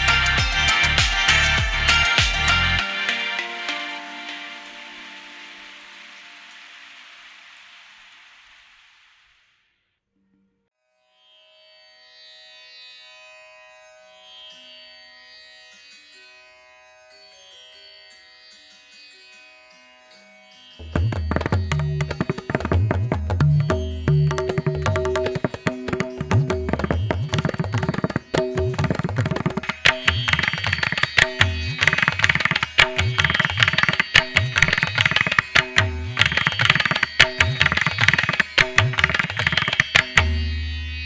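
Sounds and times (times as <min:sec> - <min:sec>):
rapid drumming: 0:20.8 - 0:40.3.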